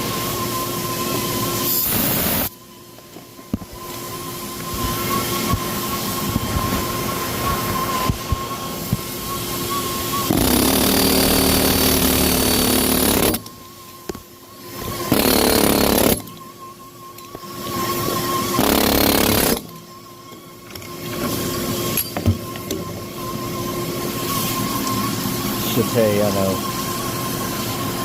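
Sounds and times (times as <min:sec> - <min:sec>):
high-pitched whine: 0:00.0 - 0:28.0
pneumatic air hammer: 0:01.6 - 0:02.5, 0:10.2 - 0:13.5, 0:14.1 - 0:16.5, 0:17.2 - 0:19.8.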